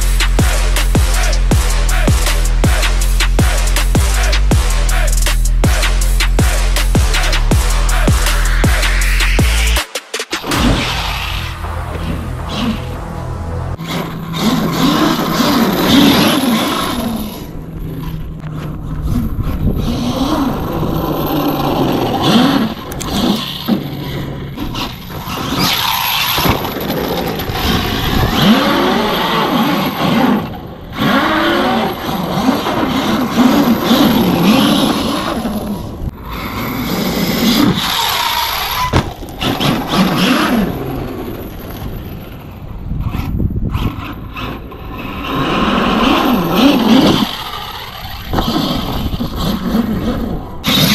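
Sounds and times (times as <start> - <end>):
tyres scraping over gravel: 13.8 - 50.9.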